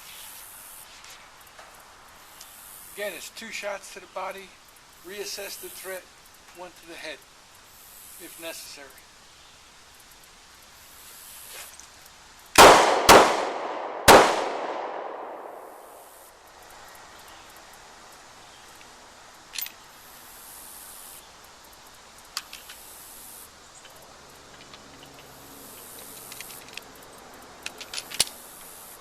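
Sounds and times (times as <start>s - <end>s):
handgun shots: 12.6s - 16.0s.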